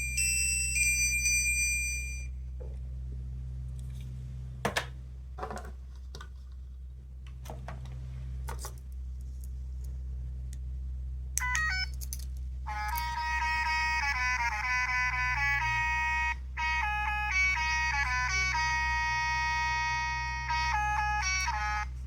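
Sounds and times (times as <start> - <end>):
electronic toy beeping melody: 0.0 - 2.3, 11.4 - 12.0, 12.7 - 22.0
low hum: 0.0 - 22.0.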